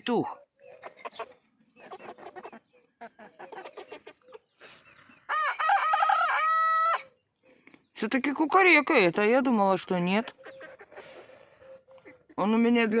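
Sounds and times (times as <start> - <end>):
chickens clucking: 0.1 - 13.0
rooster crowing: 5.3 - 7.1.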